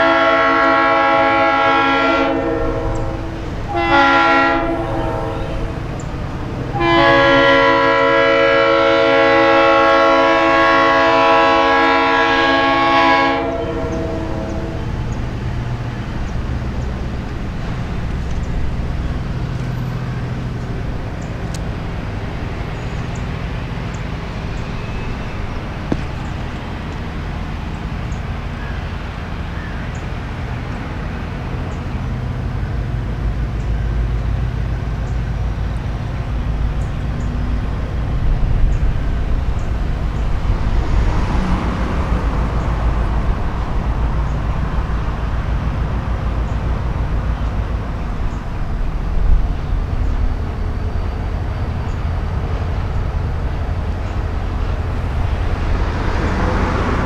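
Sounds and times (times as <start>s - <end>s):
diesel locomotive engine running: 0.0s - 57.0s.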